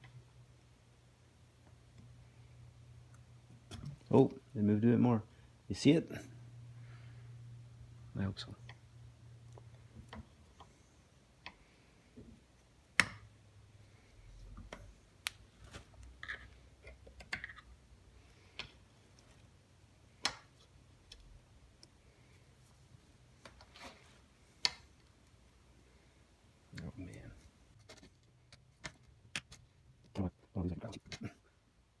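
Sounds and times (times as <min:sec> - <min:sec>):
soft handling rustles: 0:13.7 - 0:17.5, 0:20.5 - 0:25.4.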